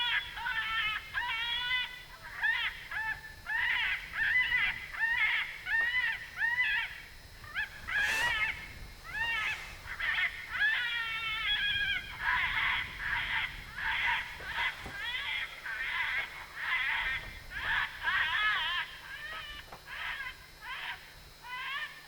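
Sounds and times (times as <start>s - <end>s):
high whining animal cries: 0.0s - 22.0s.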